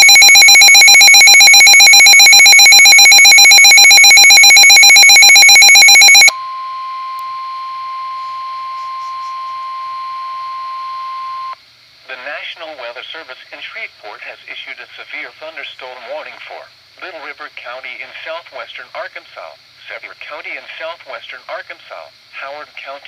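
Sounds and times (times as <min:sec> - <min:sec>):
rapidly pulsing electronic beep: 0:00.0 - 0:06.4
steady alarm tone: 0:00.0 - 0:11.6.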